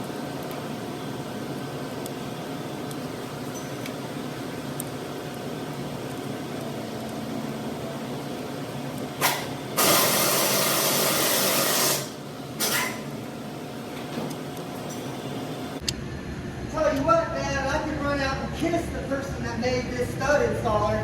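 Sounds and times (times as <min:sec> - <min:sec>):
hissing spray bursts: 0:09.2 - 0:13.0.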